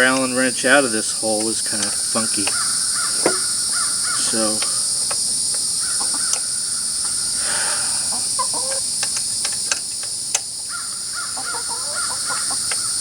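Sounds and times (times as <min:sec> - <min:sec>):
wrench clicking on bolts: 0:00.0 - 0:00.5, 0:01.3 - 0:05.6
high-pitched insect chorus: 0:00.0 - 0:13.0.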